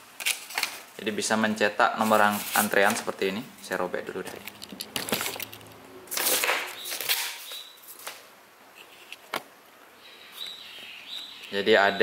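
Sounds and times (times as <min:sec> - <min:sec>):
paper handling: 0:03.7 - 0:08.2
paper ticket ripping: 0:04.2 - 0:07.4.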